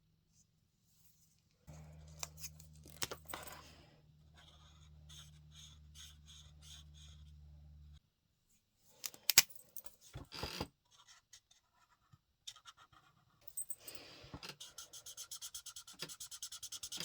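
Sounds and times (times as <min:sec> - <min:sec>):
low steady hum: 0:01.7 - 0:08.0
light scratching on paper: 0:04.2 - 0:08.0.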